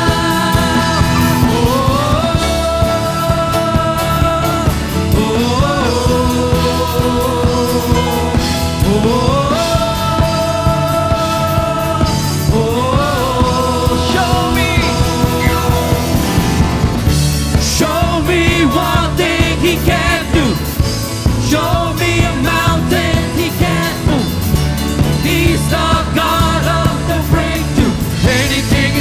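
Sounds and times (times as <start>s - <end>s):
drums and bass beat: 0.0s - 29.0s
rock band playing worship song: 0.0s - 29.0s.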